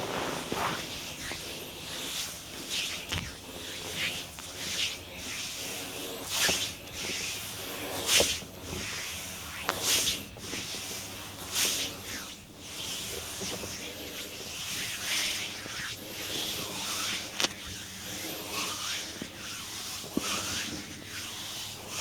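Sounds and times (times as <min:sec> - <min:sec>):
hands rubbing over skin: 0:00.0 - 0:06.6.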